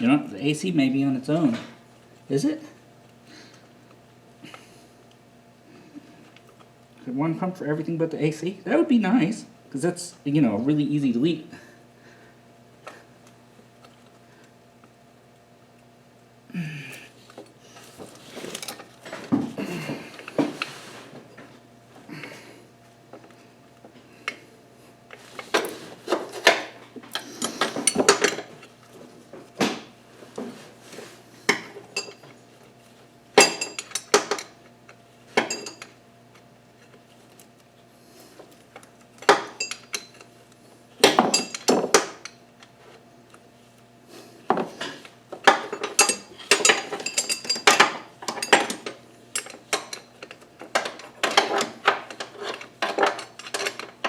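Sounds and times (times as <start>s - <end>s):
metal tools clinking and rattling: 26.3s - 28.8s, 32.0s - 32.3s, 33.4s - 34.6s, 35.4s - 35.9s, 39.2s - 40.3s, 41.1s - 42.4s, 45.5s - 54.0s.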